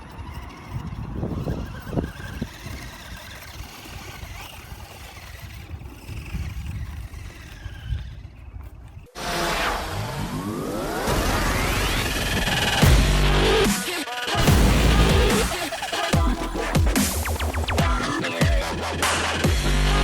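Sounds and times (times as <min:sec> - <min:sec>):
wind and ground rumble: 0:00.0 - 0:09.2
electric motor whining: 0:00.0 - 0:20.0
music: 0:12.5 - 0:20.0.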